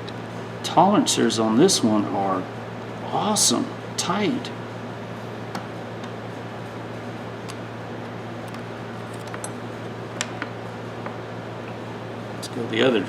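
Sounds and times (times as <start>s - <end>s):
low background hum: 0.0s - 13.0s
metallic clicks of ratchet parts: 8.4s - 9.6s.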